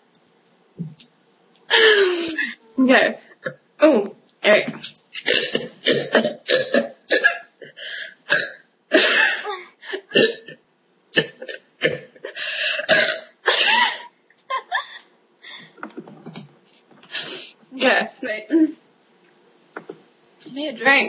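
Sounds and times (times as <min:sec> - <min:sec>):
woman burping: 0:05.2 - 0:10.6, 0:11.2 - 0:14.1.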